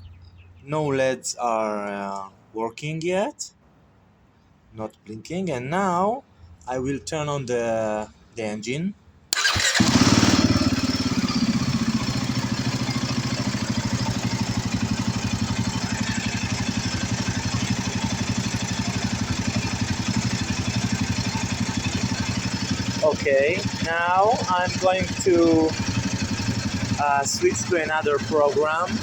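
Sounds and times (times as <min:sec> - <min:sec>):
motorcycle engine idling: 0:09.4 - 0:29.0.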